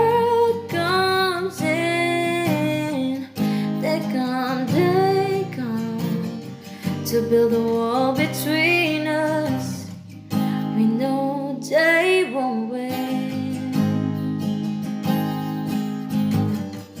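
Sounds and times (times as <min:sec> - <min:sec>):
acoustic guitar strumming: 0:00.0 - 0:17.0
person singing: 0:10.7 - 0:14.1.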